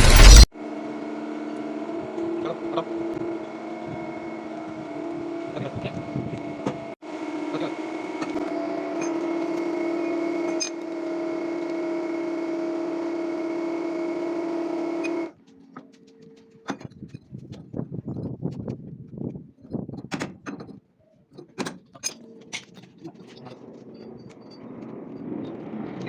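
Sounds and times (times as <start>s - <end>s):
motor running: 0.0s - 15.4s.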